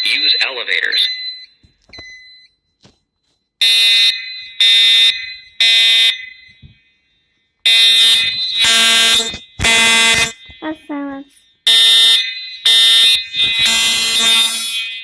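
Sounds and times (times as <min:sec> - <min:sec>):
spoken alarm message: 0:00.0 - 0:01.2, 0:10.6 - 0:11.5
fire alarm buzzy blasts: 0:03.6 - 0:06.6, 0:07.6 - 0:10.6, 0:11.6 - 0:15.0.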